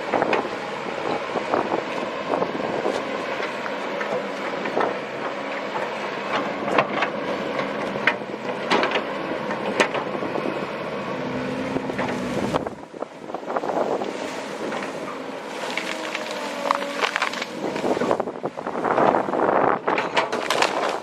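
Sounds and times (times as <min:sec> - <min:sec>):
excavator diesel engine running: 0:00.0 - 0:21.0
bucket clanking on rock: 0:19.9 - 0:21.0.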